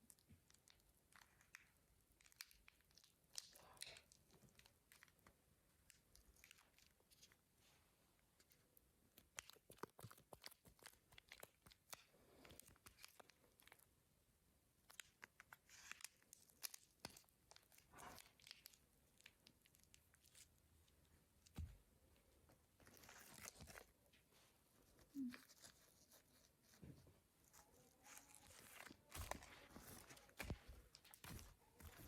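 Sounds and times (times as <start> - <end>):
packaging crinkling: 27.4 - 32.0.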